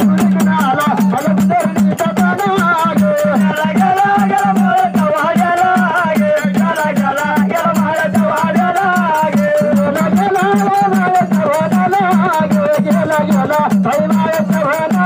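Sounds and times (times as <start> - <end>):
drum beating fast rhythm: 0.0 - 15.0.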